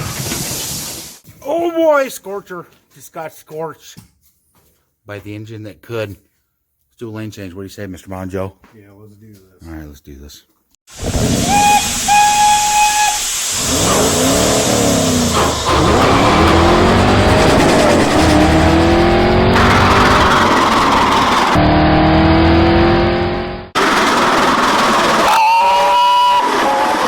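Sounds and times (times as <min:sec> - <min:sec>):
steam locomotive whistle: 0:11.0 - 0:16.8, 0:25.1 - 0:27.0
steady roar: 0:13.5 - 0:27.0
race car engines revving: 0:13.6 - 0:25.4.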